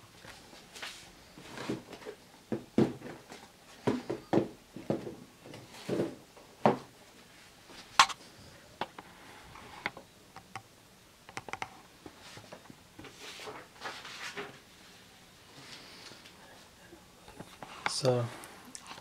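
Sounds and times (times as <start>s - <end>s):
soft rustle: 12.0s - 16.8s.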